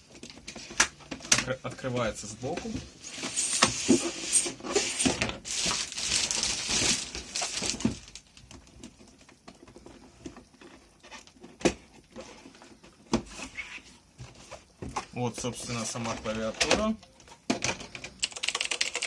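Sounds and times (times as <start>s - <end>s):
box packaging rustling and scraping: 2.2s - 8.2s, 9.6s - 16.5s.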